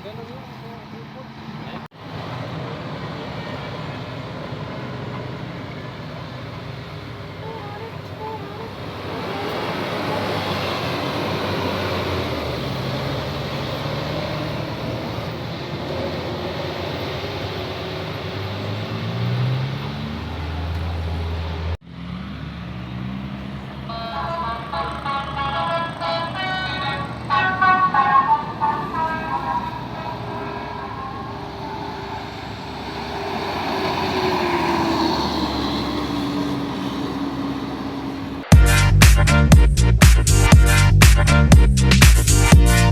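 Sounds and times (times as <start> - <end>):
bus passing: 0.0 - 41.6, 42.2 - 42.9
bus horn playing a tune: 7.3 - 12.8, 23.7 - 32.0.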